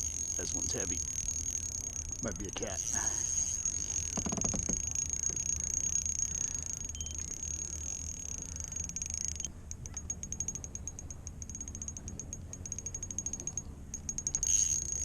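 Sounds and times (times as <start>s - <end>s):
fishing reel clicking: 0.0s - 15.0s
fishing reel drag buzzing: 0.0s - 15.0s.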